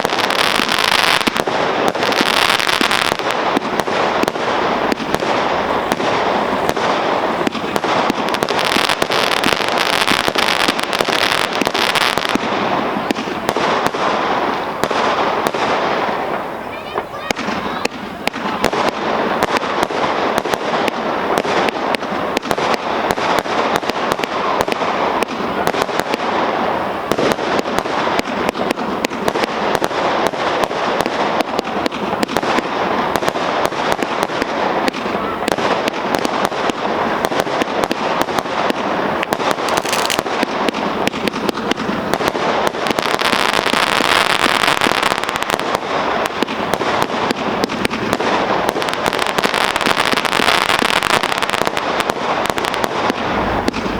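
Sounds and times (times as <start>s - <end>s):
fireworks cake firing: 0.0s - 53.9s.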